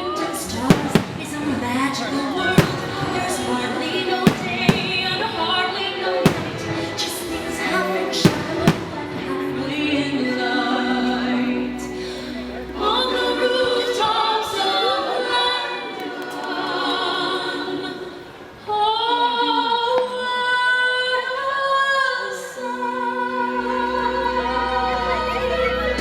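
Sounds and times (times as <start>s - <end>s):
choir singing: 0.0s - 20.2s
woman singing long held notes: 0.0s - 26.0s.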